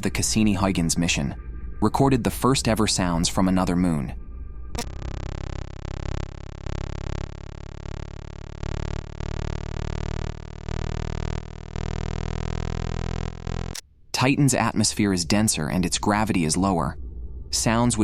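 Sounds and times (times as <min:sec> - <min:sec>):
faint rising tone: 0:04.2 - 0:13.8.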